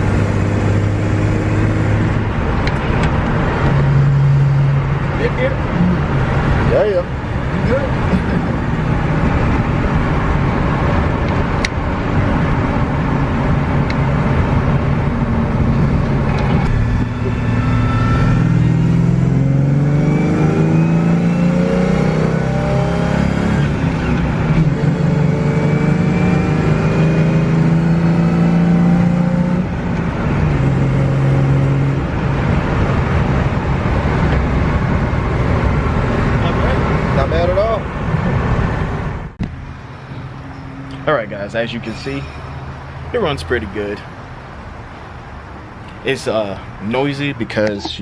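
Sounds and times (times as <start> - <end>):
car engine accelerating: 0.0 - 43.8.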